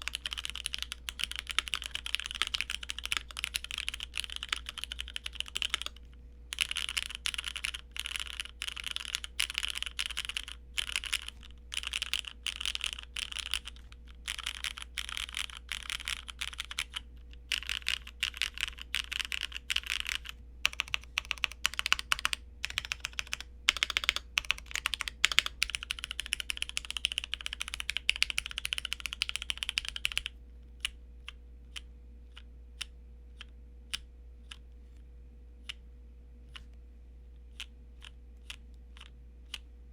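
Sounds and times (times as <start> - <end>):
mechanical keyboard typing: 0.0 - 30.9.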